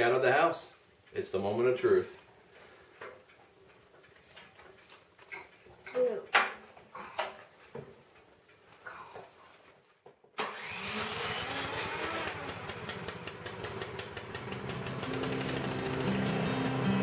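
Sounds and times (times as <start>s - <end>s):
snow blower engine running: 10.4s - 17.0s.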